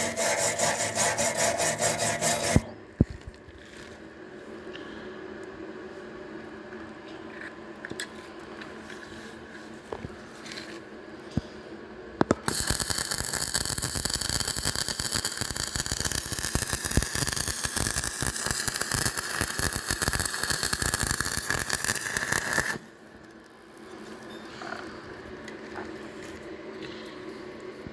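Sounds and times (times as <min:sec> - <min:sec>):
welding arc crackling: 0:12.3 - 0:23.7.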